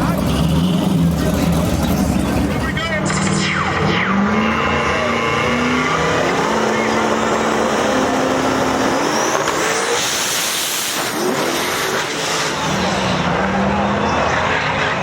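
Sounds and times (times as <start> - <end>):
drag race car engines: 0.0 - 15.0
rising whine: 0.4 - 15.0.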